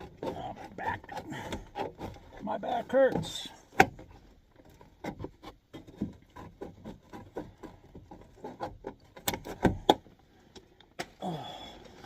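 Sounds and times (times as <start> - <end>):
knocks and scrapes: 0.0 - 12.0.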